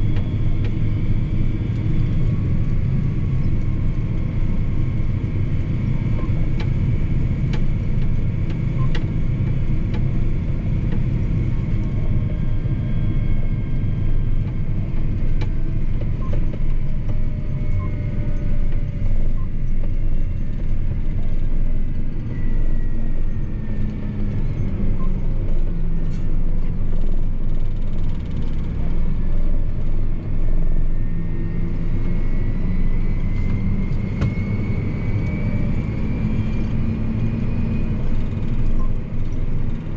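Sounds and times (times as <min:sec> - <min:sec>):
tractor diesel engine rumble: 0:00.0 - 0:39.9
thin whine rising in pitch: 0:30.5 - 0:39.4.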